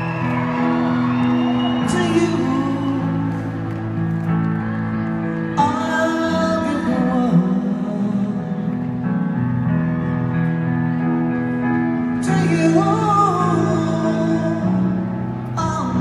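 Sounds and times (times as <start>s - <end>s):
person singing: 1.8s - 3.7s, 5.5s - 9.0s, 12.2s - 16.0s.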